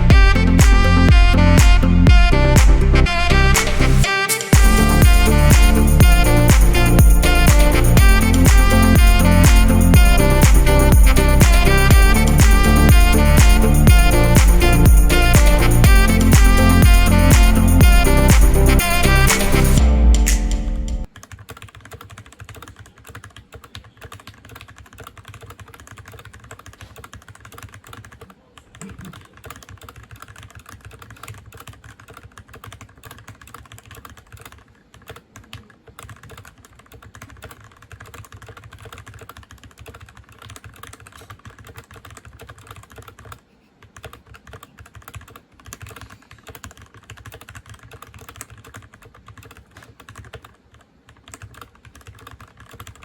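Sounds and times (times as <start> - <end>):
mechanical keyboard typing: 21.1 - 53.0.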